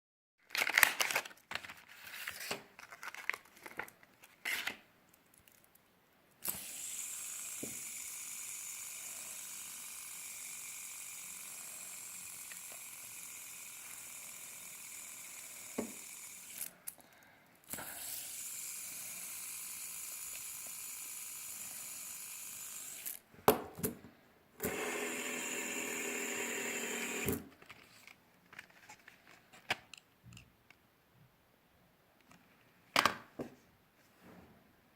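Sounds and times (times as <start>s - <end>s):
fidget spinner whirring: 6.4s - 16.8s, 17.7s - 23.2s, 24.6s - 27.6s.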